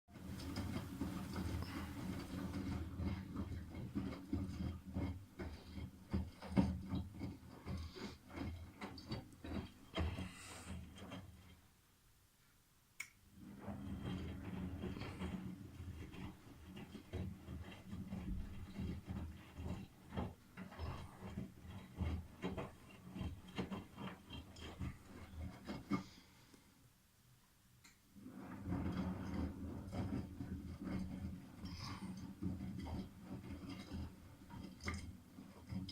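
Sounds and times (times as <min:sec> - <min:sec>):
laundry tumbling with soft knocks: 0:00.1 - 0:07.7
washing machine motor hum: 0:00.1 - 0:11.4.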